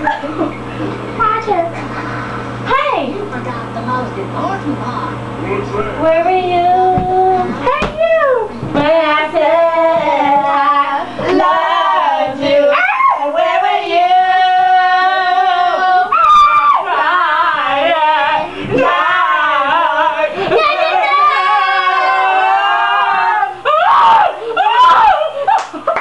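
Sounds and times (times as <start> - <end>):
girls making sing-song wails: 6.6 - 25.6.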